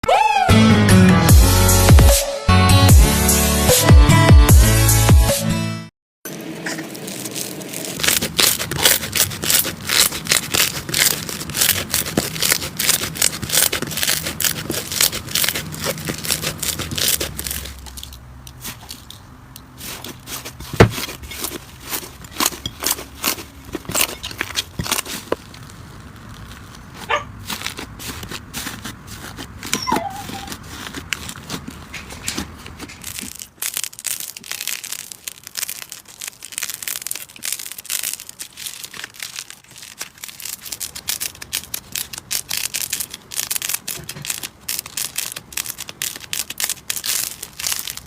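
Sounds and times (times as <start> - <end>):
slime crackling and popping: 6.3 - 19.1, 19.7 - 48.0.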